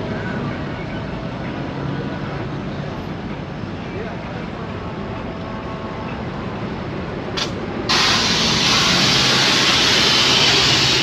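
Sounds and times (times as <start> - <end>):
pressurised air hissing: 7.4 - 11.0.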